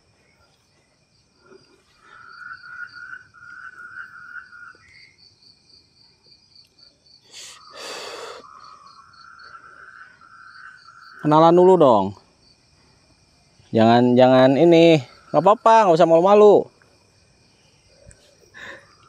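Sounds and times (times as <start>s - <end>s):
crickets chirping and trilling: 0.0s - 19.0s.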